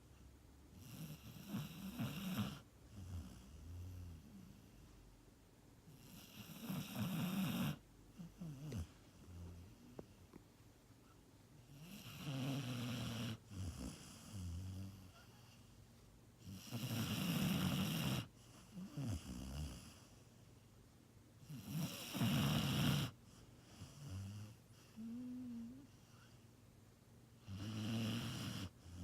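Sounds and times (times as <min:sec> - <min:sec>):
dog snoring: 0:00.7 - 0:05.0, 0:05.9 - 0:10.2, 0:11.6 - 0:15.6, 0:16.4 - 0:20.2, 0:21.4 - 0:26.4, 0:27.4 - 0:29.0.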